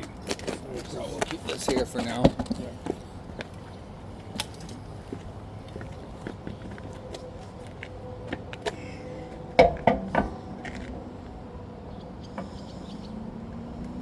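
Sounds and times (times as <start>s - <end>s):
wheel knocking against hub: 9.6s - 10.4s.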